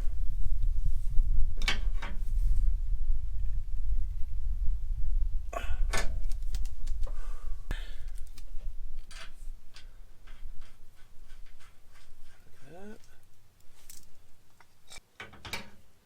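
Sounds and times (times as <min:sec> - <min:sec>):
low rumble: 0:00.0 - 0:11.5.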